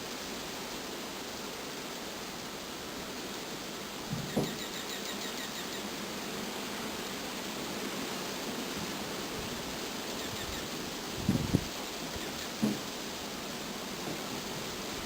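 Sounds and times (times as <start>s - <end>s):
thump: 4.1s - 4.6s, 12.6s - 12.8s.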